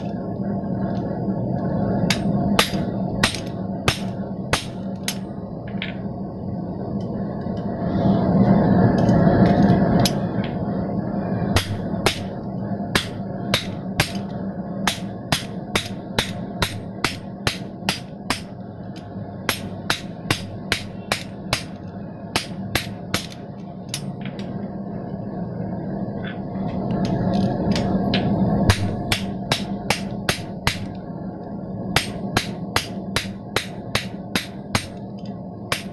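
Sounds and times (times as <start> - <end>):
steady low hum: 0.0 - 35.9
hammer striking steel on anvil: 2.1 - 5.2, 11.6 - 12.3, 12.9 - 14.2, 14.8 - 18.6, 19.5 - 24.1, 28.2 - 30.9, 32.0 - 35.0.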